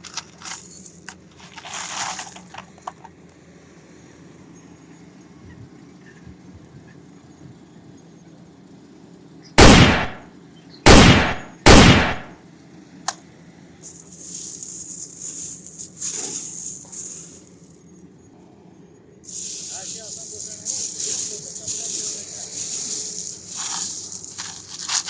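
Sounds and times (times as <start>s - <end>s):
loud gunshot bangs: 9.6s - 10.2s, 10.9s - 12.3s
sharp click: 9.6s - 10.2s, 10.9s - 12.3s
uneven hissing: 13.8s - 17.8s, 19.2s - 25.0s.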